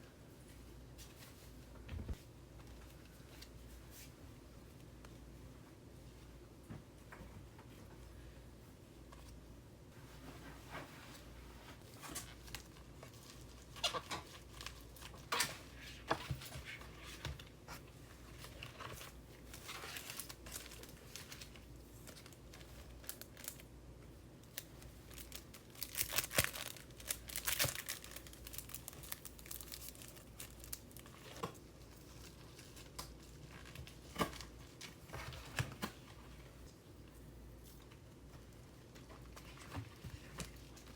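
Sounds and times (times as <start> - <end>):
plastic wrap crinkling: 11.9 - 17.1, 18.3 - 23.7, 24.4 - 36.0
tape tearing: 25.2 - 30.0.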